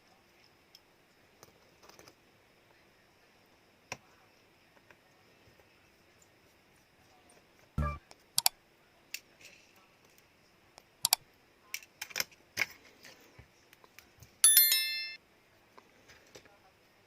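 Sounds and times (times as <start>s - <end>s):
ringing metallic clink: 14.4s - 15.2s.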